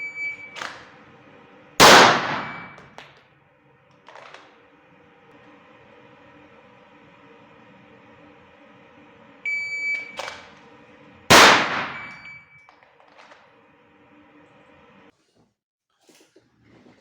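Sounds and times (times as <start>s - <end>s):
electronic timer beep: 0.0s - 0.6s, 2.4s - 2.8s, 9.4s - 10.2s, 11.8s - 12.7s
pistol shots: 1.8s - 2.7s, 11.3s - 12.1s.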